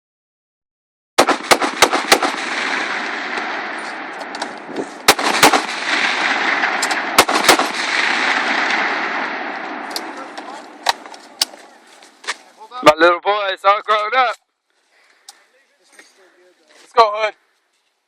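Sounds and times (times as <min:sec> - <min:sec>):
gunshots: 0:01.2 - 0:11.6
steady rushing noise: 0:01.4 - 0:12.0.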